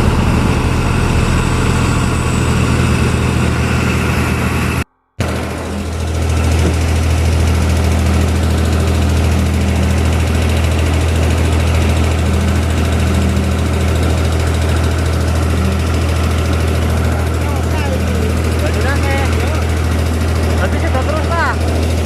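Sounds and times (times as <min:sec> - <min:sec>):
heavy machine engine running: 0:00.0 - 0:22.0.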